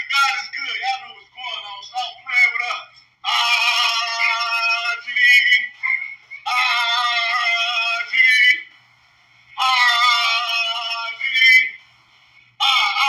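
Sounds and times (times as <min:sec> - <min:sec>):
person singing high wavering phrases: 0:03.2 - 0:08.7, 0:09.6 - 0:11.8, 0:12.6 - 0:13.0.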